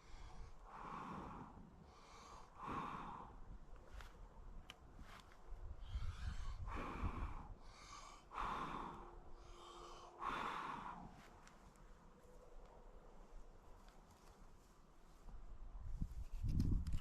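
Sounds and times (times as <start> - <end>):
person breathing hard: 0.0 - 4.1, 5.8 - 11.4.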